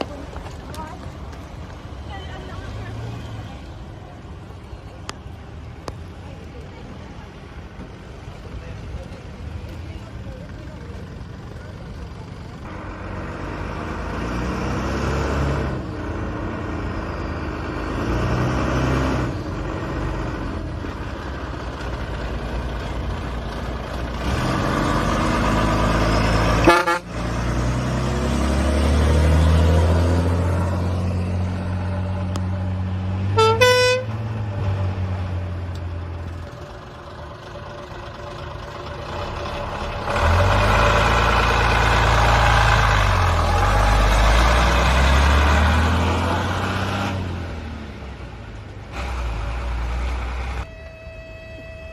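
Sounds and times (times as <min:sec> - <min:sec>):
vehicle engines rumbling past: 0:00.0 - 0:51.9
short horn blast: 0:26.6 - 0:27.2, 0:33.3 - 0:34.2.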